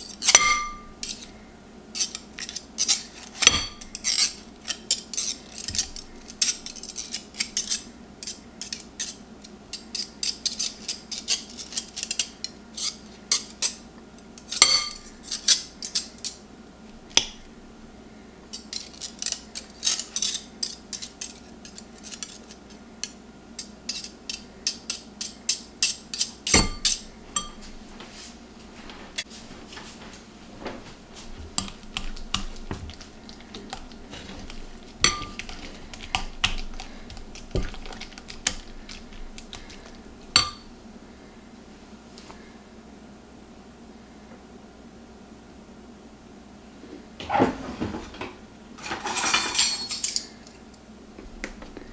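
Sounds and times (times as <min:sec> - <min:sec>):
faint steady hum: 0:00.0 - 0:51.9
dishes and cutlery clinking: 0:00.2 - 0:01.3, 0:02.8 - 0:06.7, 0:14.4 - 0:16.1, 0:24.9 - 0:28.2, 0:30.7 - 0:40.7, 0:47.2 - 0:50.6.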